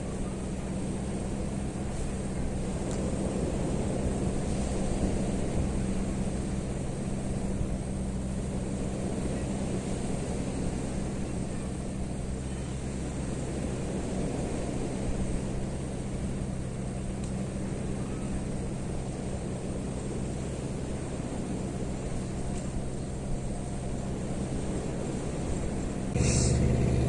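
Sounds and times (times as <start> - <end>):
motor droning: 0.0 - 27.0.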